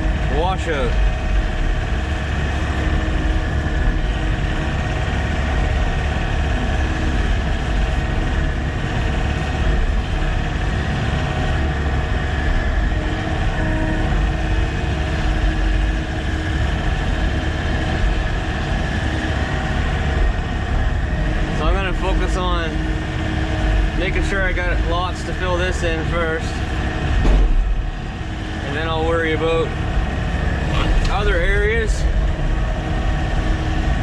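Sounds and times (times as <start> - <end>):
excavator diesel engine running: 0.0 - 34.0.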